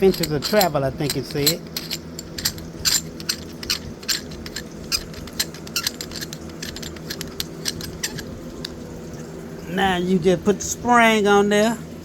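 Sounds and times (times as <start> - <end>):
metal parts clinking together: 0.0 - 8.8.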